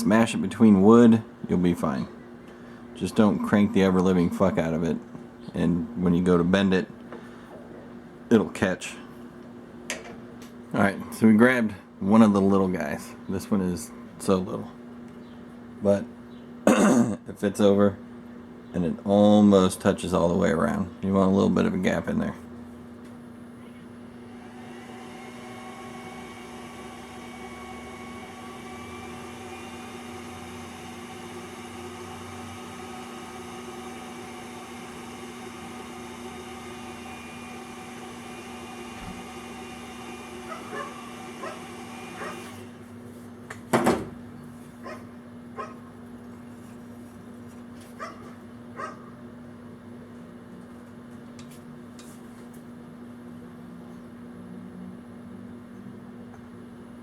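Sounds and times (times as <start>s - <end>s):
induction heater whining: 0.0s - 16.3s, 18.7s - 57.0s
low hum: 2.1s - 6.0s.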